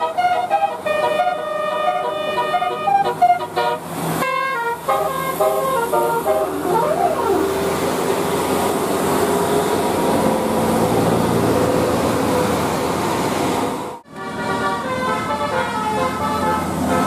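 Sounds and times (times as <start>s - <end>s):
multi-tone bus horn tune: 0.0s - 8.6s, 14.0s - 17.0s
bus passing close: 0.0s - 17.0s.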